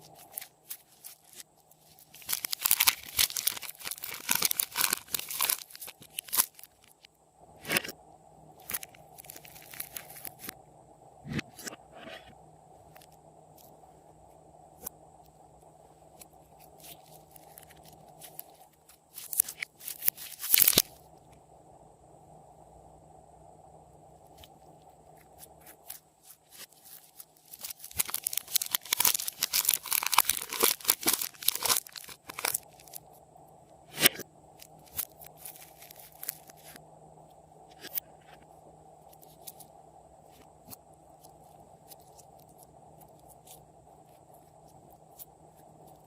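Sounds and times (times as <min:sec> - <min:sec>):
slime crackling and clicking: 0:02.0 - 0:06.8, 0:27.5 - 0:33.0.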